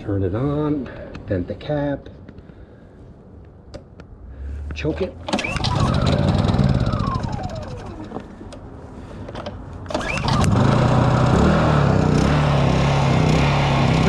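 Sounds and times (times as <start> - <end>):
portable generator starting: 5.2 - 8.6, 9.8 - 14.0.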